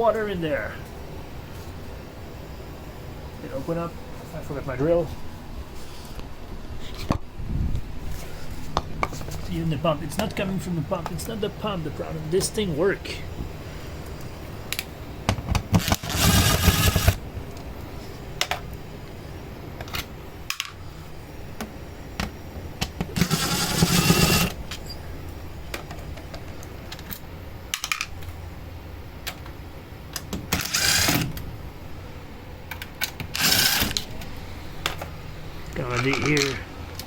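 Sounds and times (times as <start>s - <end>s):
small motor whirring: 15.8s - 17.2s, 23.2s - 24.6s, 30.6s - 31.3s, 33.3s - 34.1s.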